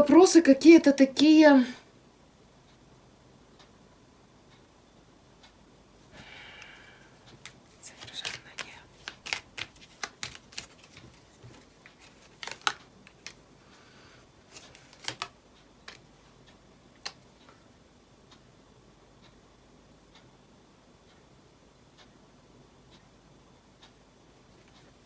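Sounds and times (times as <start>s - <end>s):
cards clicking and tapping on table: 7.4s - 13.4s, 14.6s - 15.3s.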